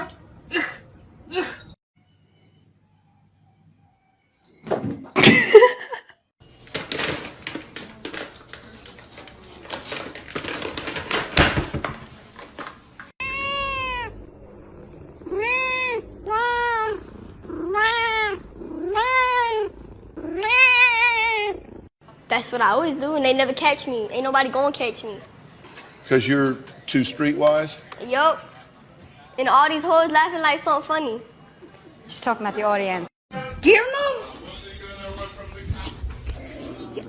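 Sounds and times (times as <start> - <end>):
rustling and clattering: 6.4 - 13.1
cat meowing: 13.2 - 21.8.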